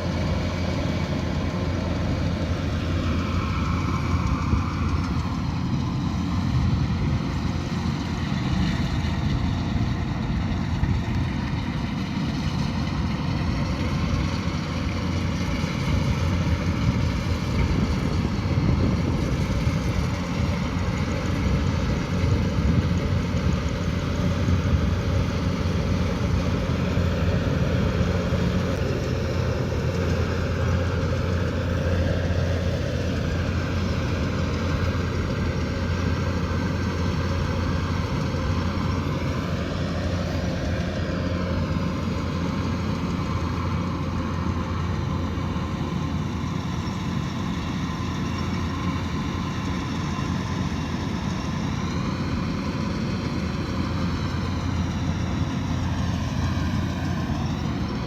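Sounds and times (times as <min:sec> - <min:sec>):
combine harvester engine droning: 0:00.0 - 0:58.0.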